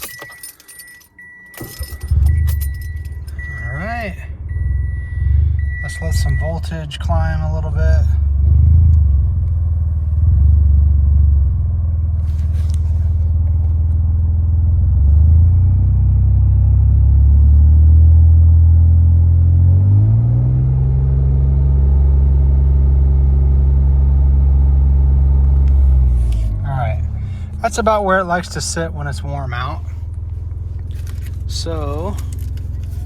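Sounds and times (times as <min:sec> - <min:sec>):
car engine idling: 0:00.0 - 0:15.1, 0:23.4 - 0:33.0.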